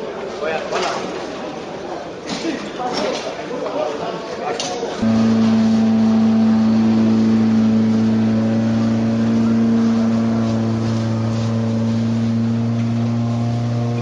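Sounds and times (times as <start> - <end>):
steady motor drone: 5.0 - 14.0.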